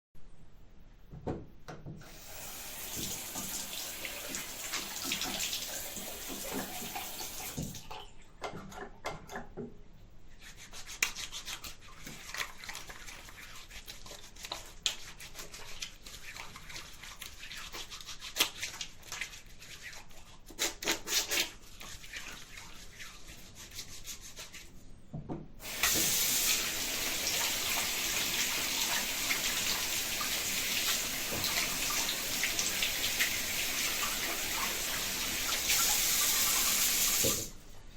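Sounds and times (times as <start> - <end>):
soap dispenser pumping: 2.0 - 7.8, 25.6 - 37.6
water running into a sink: 2.0 - 7.9, 25.6 - 37.6
hands rubbing in soap lather: 10.3 - 24.7, 25.6 - 37.5.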